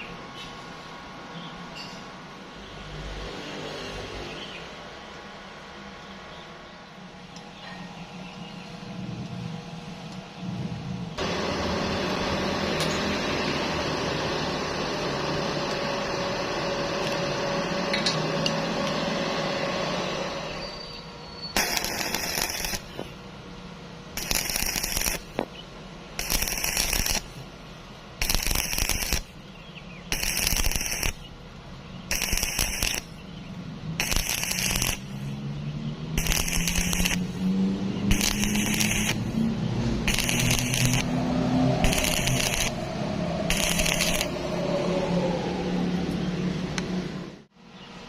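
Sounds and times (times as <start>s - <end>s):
welding arc crackling: 21.6s - 23.2s, 24.2s - 25.6s, 26.2s - 27.5s, 28.2s - 29.4s, 30.1s - 33.2s, 33.9s - 35.4s, 36.2s - 44.4s
low wavering hum: 26.0s - 47.5s.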